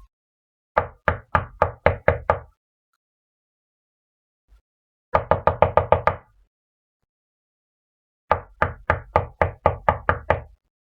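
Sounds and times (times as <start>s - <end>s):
knocking on wooden door: 0.8s - 2.5s, 5.1s - 6.2s, 8.3s - 10.5s.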